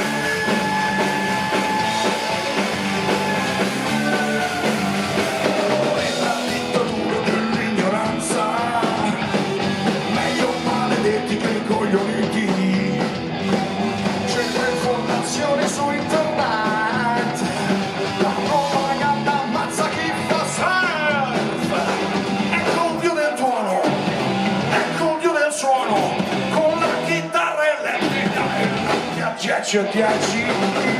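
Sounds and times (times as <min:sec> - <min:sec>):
bending lead melody: 0:00.0 - 0:22.7
rock band playing: 0:00.0 - 0:30.9.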